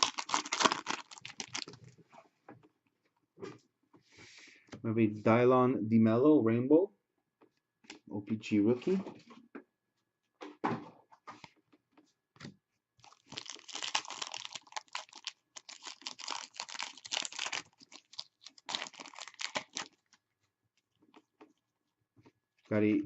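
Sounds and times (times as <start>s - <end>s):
wrappers crinkling and cards clicking: 0.0s - 1.8s, 13.0s - 20.2s.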